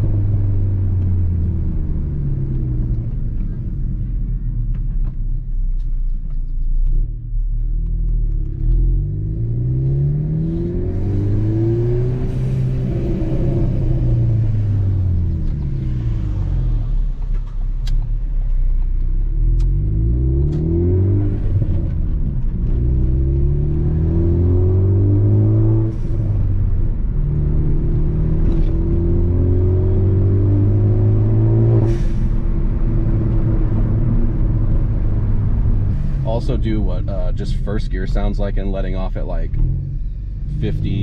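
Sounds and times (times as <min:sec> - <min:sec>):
car engine revving: 0:07.8 - 0:18.0, 0:19.3 - 0:41.0.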